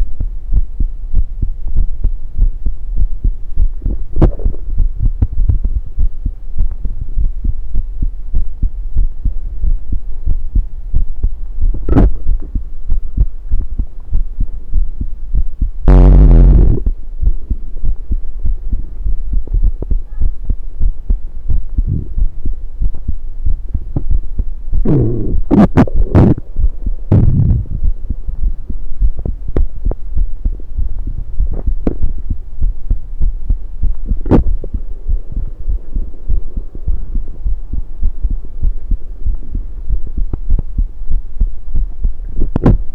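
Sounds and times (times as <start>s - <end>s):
heartbeat thumping: 0.0s - 42.9s
sudden loud noises: 15.9s - 16.9s.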